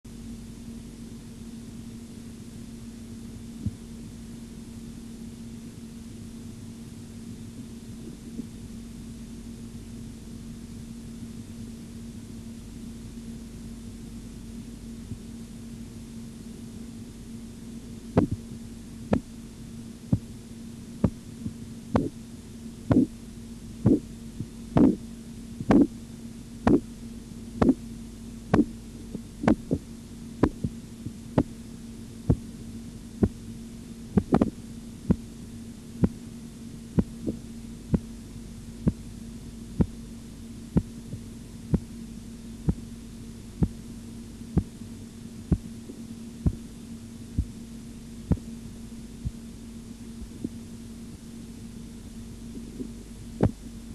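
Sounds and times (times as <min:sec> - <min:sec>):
low hum: 0:17.8 - 0:47.6, 0:51.5 - 0:53.9
stethoscope heartbeat taps: 0:18.2 - 0:18.4, 0:24.8 - 0:25.0, 0:25.6 - 0:25.9, 0:27.6 - 0:27.8, 0:28.5 - 0:28.7, 0:29.5 - 0:29.8, 0:30.4 - 0:30.7, 0:34.2 - 0:34.5, 0:53.4 - 0:53.6.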